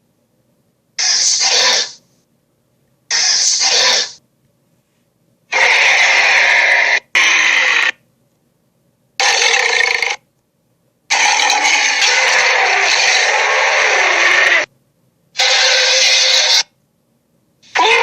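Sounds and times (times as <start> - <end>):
dragon roaring and screeching: 5.5 - 8.0, 9.2 - 10.2, 11.1 - 14.7, 15.4 - 16.7, 17.7 - 18.0.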